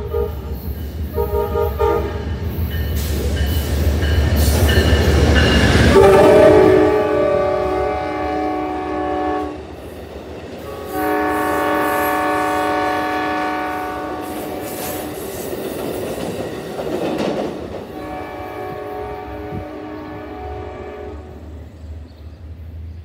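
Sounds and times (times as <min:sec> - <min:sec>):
locomotive air horn blasts: 0:00.0 - 0:00.5, 0:01.1 - 0:02.2, 0:05.9 - 0:09.6, 0:10.6 - 0:15.1, 0:17.9 - 0:21.5
passing train rushing and clattering: 0:00.0 - 0:23.0.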